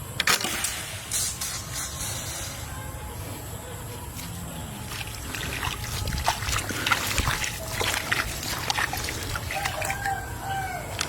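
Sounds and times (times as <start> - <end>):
water splashing and trickling: 4.0 - 11.0.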